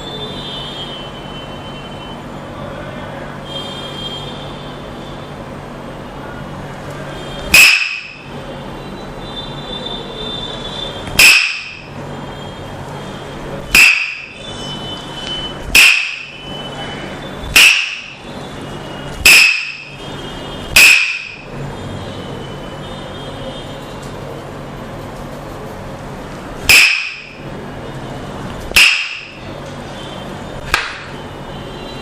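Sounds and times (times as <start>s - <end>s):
wooden mallet knocking on stick: 11.2s - 11.8s, 15.8s - 16.3s.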